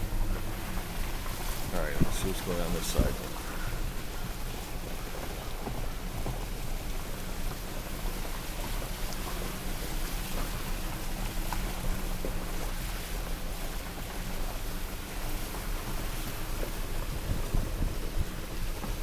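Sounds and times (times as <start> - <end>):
road noise: 0.0 - 4.9.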